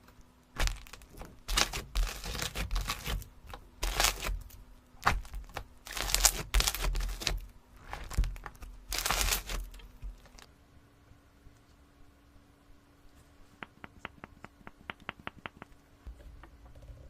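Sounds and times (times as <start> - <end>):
crinkling and crackling: 0.0 - 10.5.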